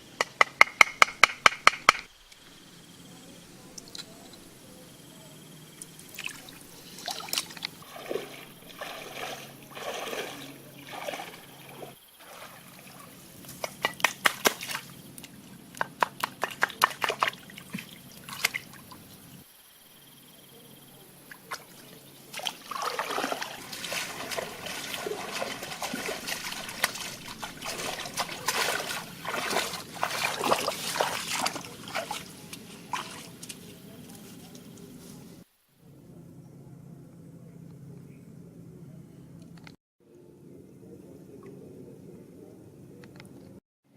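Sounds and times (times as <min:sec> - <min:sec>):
water sloshing and splashing: 0:05.8 - 0:15.6, 0:16.2 - 0:19.4, 0:21.3 - 0:34.9.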